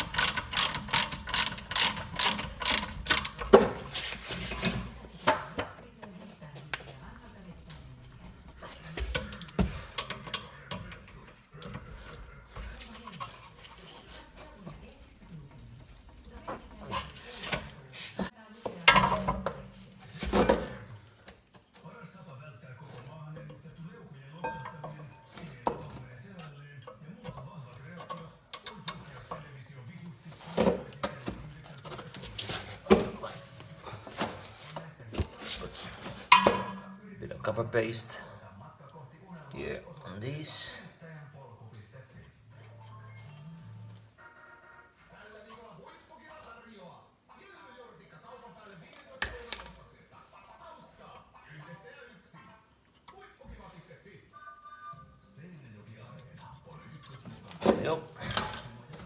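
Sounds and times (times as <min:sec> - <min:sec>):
metal brake parts clicking: 0:00.0 - 0:04.8.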